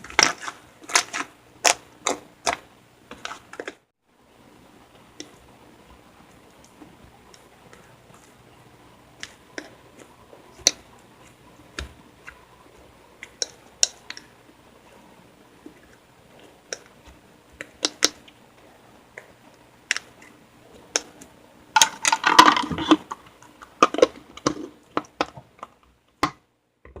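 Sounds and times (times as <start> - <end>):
slime crackling and squishing: 0.0 - 3.8.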